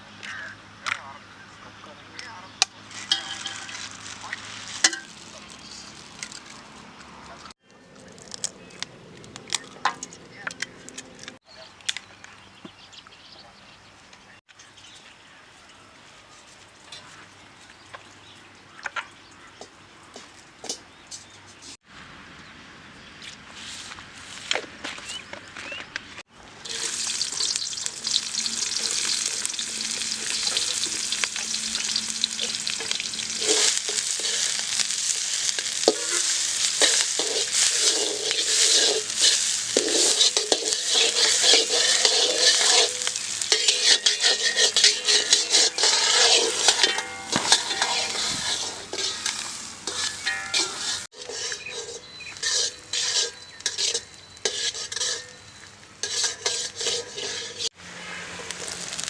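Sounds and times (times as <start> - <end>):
food sizzling in pan: 2.9 - 6.2, 26.6 - 55.3, 56.0 - 59.0
spatula scraping pan: 3.0 - 4.1, 26.6 - 59.0.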